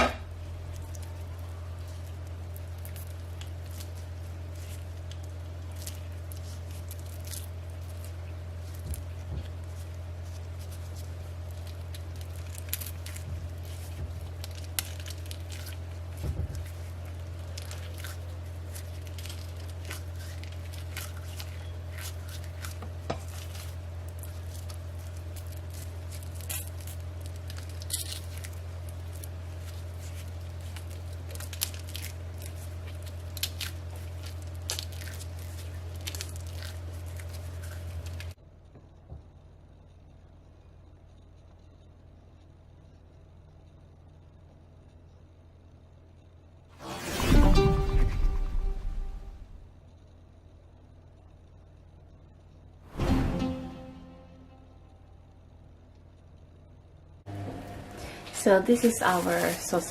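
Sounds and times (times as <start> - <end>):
sausage meat squishing by hand: 0.0 - 38.4
steady low hum: 0.0 - 59.9.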